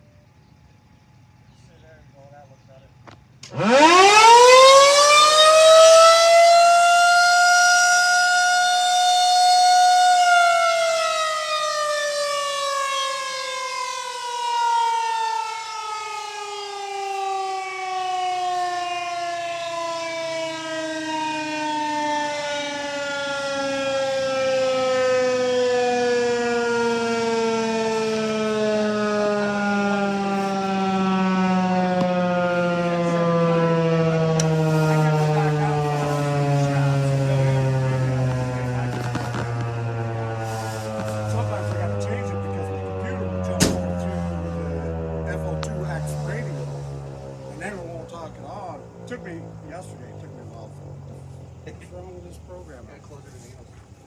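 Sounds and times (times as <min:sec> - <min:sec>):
tornado siren wailing: 0:03.4 - 0:54.0.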